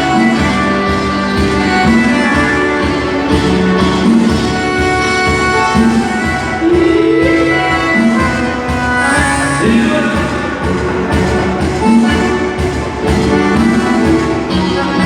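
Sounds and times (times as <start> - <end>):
dance music: 0.0 - 15.0.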